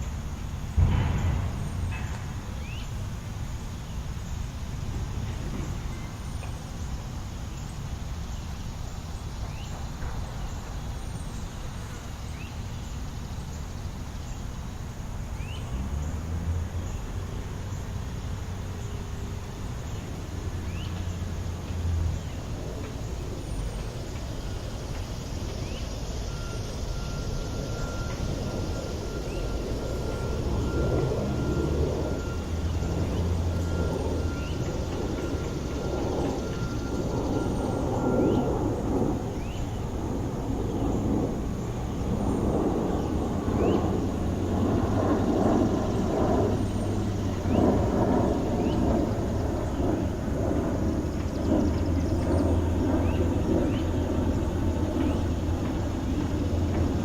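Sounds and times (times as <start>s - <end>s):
distant road traffic rumble: 0.0s - 57.0s
faint rising chirps: 15.4s - 57.0s
bird chirps: 23.5s - 38.6s, 43.0s - 44.1s.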